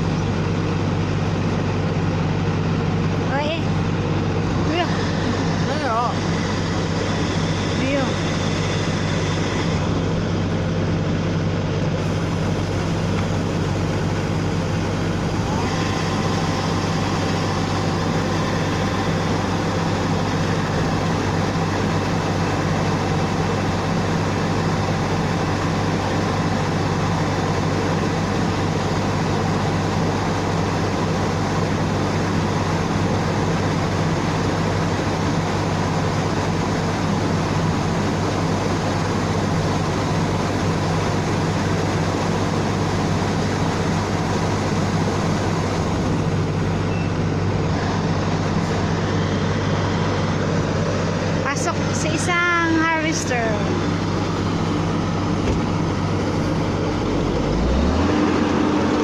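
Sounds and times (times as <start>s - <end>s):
combine harvester engine humming: 0.0s - 59.0s.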